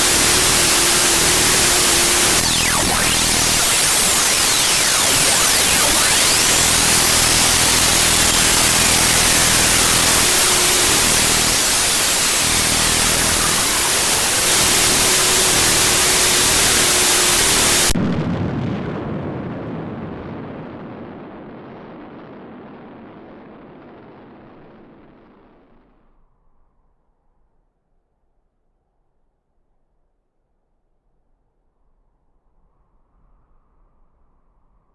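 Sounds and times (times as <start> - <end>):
loud radio hiss: 0.0 - 18.0
sweeping tones: 0.0 - 18.0.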